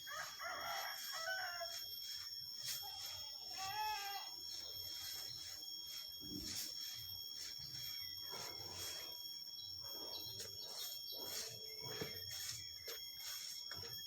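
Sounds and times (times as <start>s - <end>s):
sand swishing through sifter screen: 4.4s - 9.2s, 9.8s - 13.9s.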